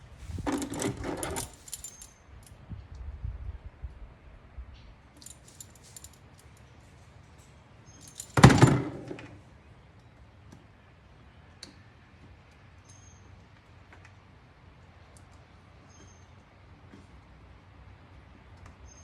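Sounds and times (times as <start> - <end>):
small metal parts clinking: 0.2 - 2.5, 5.2 - 9.4
loud metal clunk: 8.2 - 9.4.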